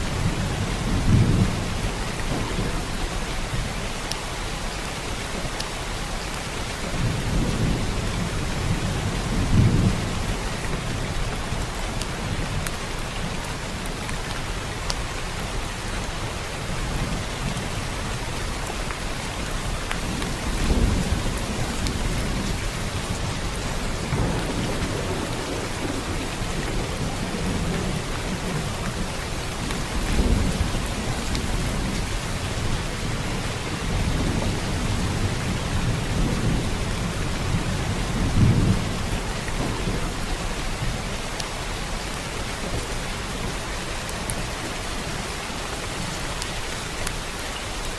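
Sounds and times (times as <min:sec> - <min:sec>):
steady rain: 0:00.0 - 0:47.9
distant thunder rumbles: 0:19.6 - 0:41.3.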